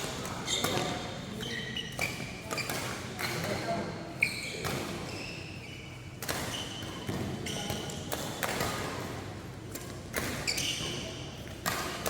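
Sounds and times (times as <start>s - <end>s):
shoes squeaking on court: 0.1s - 3.6s, 4.2s - 7.9s, 10.3s - 11.2s.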